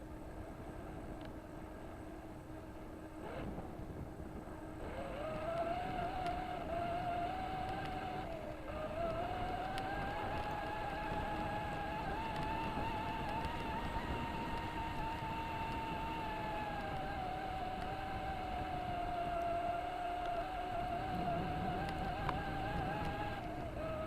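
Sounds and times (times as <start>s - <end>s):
toy car electric motor whining: 4.8s - 24.0s.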